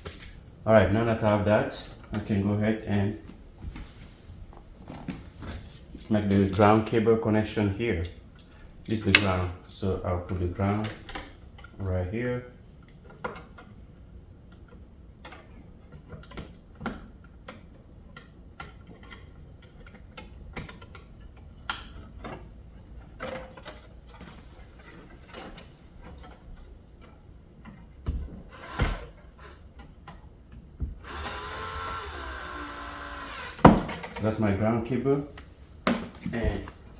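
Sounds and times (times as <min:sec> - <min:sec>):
hand tools clicking and tapping: 0:08.0 - 0:11.7
loud knocks: 0:33.6 - 0:34.1.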